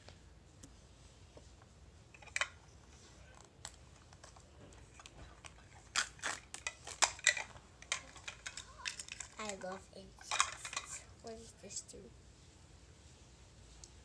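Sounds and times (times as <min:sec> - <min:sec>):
plastic wrapping crinkling: 0:03.3 - 0:11.4
small plastic pieces clicking: 0:05.0 - 0:11.0.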